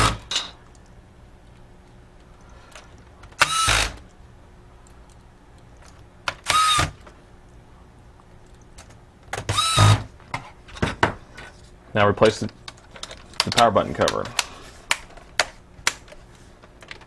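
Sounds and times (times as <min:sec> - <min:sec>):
electric screwdriver whirring: 0:03.4 - 0:04.0, 0:06.4 - 0:07.0, 0:09.5 - 0:10.1.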